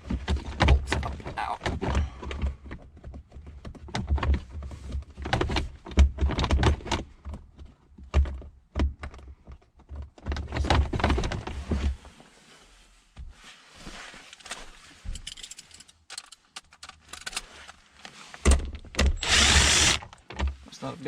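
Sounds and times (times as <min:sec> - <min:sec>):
bolts clicking and rattling: 0:14.4 - 0:17.7.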